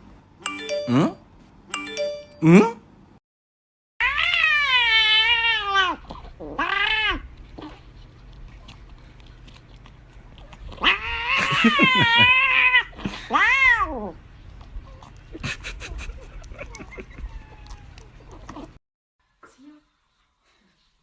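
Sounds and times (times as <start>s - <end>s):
cat yowling: 4.0s - 7.3s, 10.7s - 14.2s, 17.2s - 18.1s.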